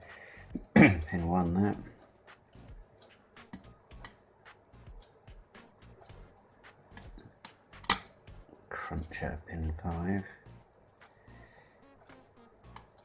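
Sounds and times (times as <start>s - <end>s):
lock pick clicking in lock: 6.9s - 8.1s.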